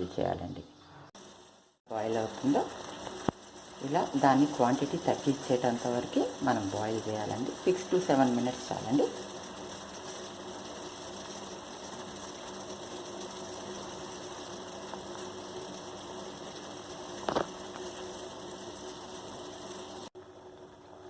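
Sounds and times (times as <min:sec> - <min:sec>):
gas burner noise: 0:01.1 - 0:21.0
pot bubbling on simmer: 0:01.1 - 0:21.0.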